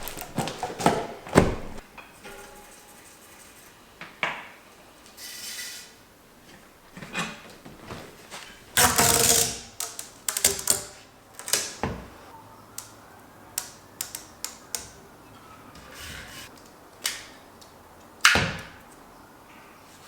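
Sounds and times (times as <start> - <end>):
metal bicycle parts clicking: 8.8 - 11.8, 13.6 - 15.1
scraping rasp: 15.8 - 16.5.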